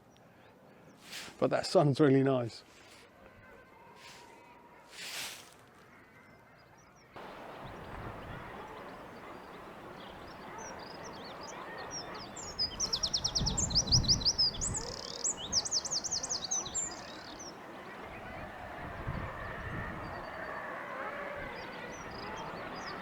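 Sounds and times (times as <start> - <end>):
outdoor background noise: 0.0 - 23.0
bird chirps: 7.2 - 23.0
songbird trilling: 7.2 - 23.0.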